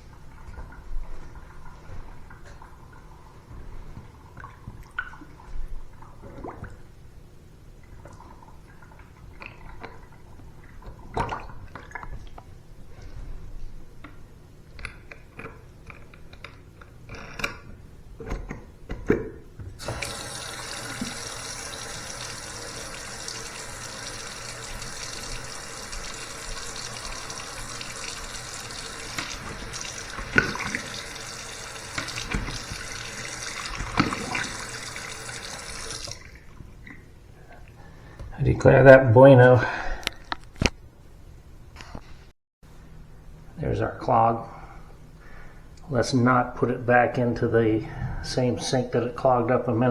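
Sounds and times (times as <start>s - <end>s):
water running into basin: 19.8s - 36.7s.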